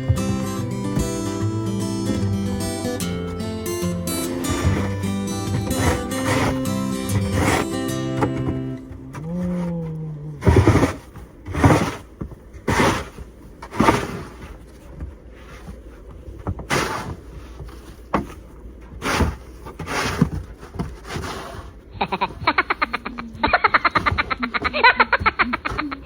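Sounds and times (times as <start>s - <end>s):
snow crunching: 0.0s - 9.8s.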